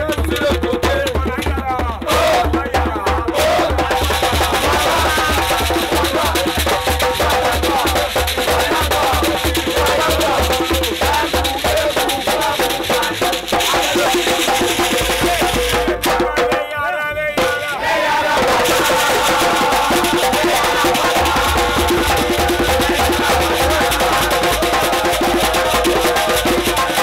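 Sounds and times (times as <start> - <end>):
drums and rattles beat: 0.0 - 27.0.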